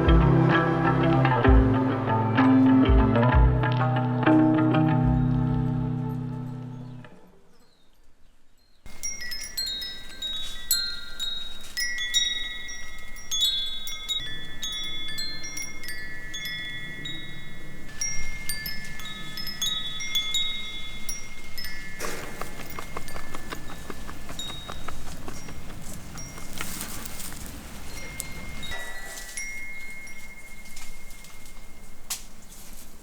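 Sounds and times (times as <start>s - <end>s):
metal chimes ringing: 8.6s - 32.1s.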